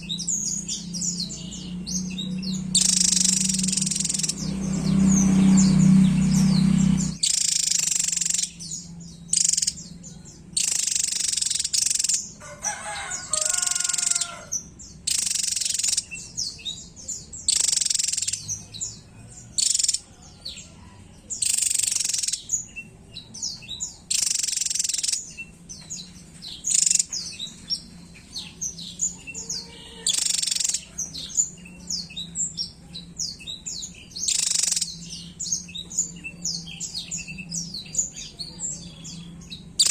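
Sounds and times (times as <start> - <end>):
low hum: 0.0 - 7.2
bird singing rapid high song: 0.0 - 39.9.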